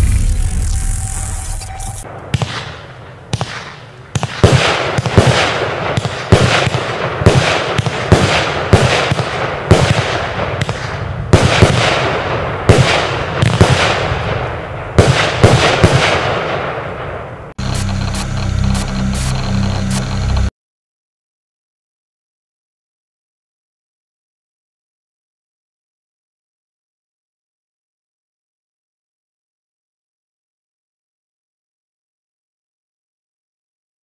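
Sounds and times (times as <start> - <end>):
firework bangs: 0.0 - 17.3.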